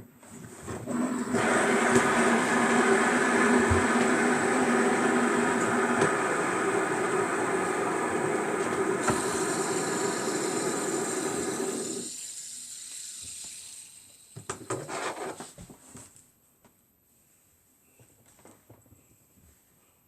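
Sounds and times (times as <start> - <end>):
fidget spinners whirring: 9.0 - 15.2.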